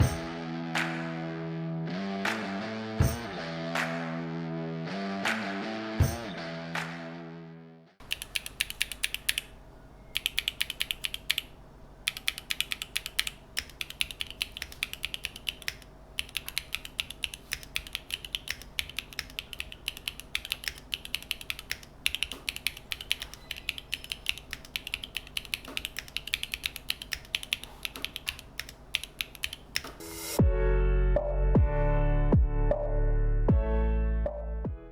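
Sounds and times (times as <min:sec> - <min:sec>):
mechanical keyboard typing: 0:08.0 - 0:09.6, 0:10.2 - 0:30.0.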